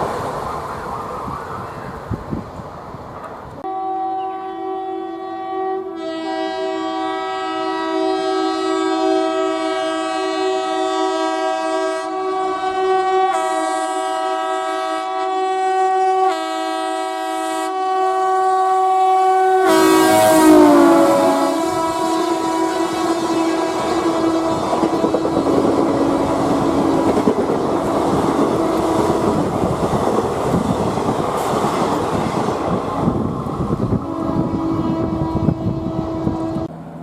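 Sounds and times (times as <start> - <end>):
train running noise: 0.0 - 5.3, 18.8 - 37.0
locomotive horn chord: 3.6 - 29.5, 33.8 - 36.7.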